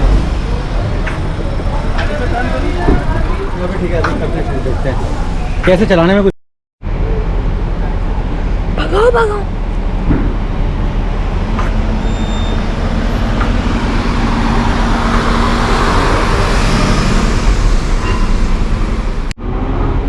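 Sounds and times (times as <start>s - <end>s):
engine running under load: 0.0s - 6.2s
tyre and road noise: 0.0s - 20.0s.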